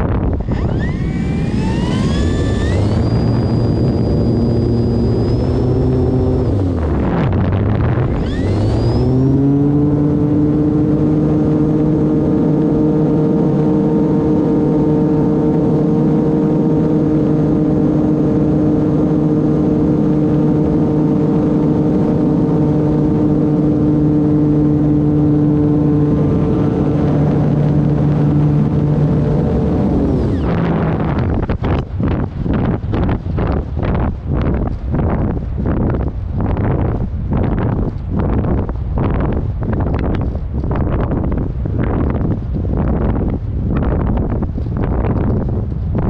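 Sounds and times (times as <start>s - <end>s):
wind-like rush: 0.0s - 46.0s
model plane motor buzzing: 0.1s - 34.1s.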